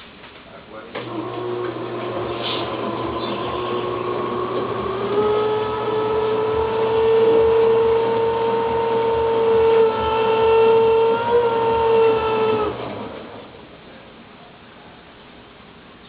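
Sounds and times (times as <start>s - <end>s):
washer pump droning: 1.0s - 13.8s.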